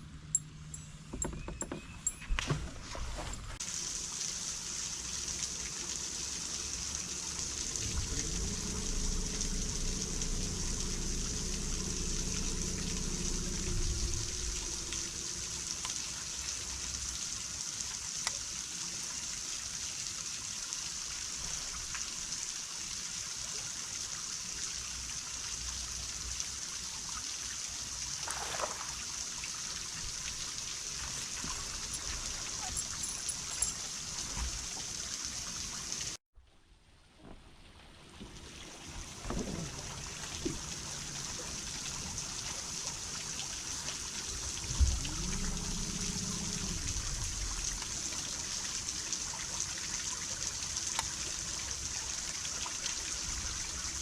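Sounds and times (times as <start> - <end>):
water trickling and lapping: 2.6 - 36.2, 37.2 - 54.0
low motor hum: 6.6 - 17.2, 44.2 - 48.6.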